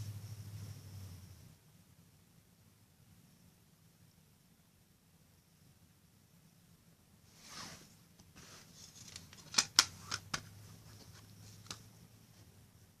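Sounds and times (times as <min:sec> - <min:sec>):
sharp plastic clicks: 0:09.1 - 0:10.5.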